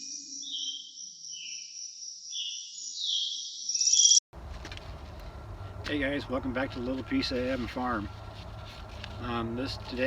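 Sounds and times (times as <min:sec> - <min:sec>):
birds chirping: 0:00.0 - 0:04.2.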